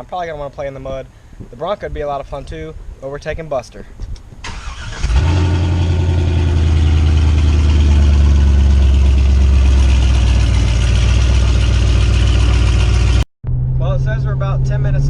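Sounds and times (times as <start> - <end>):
truck engine running: 4.7 - 13.6.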